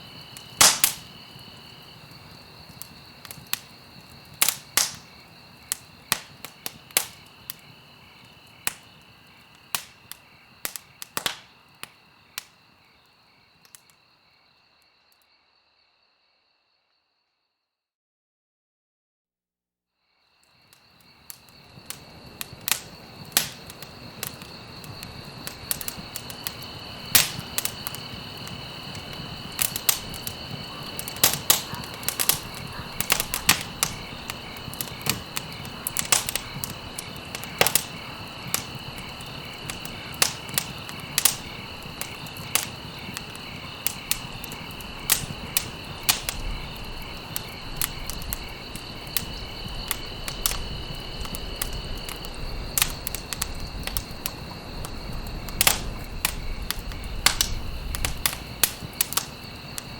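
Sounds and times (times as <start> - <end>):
campfire crackling and popping: 0.0 - 14.0, 20.4 - 59.9
high-pitched insect trill: 20.0 - 59.9.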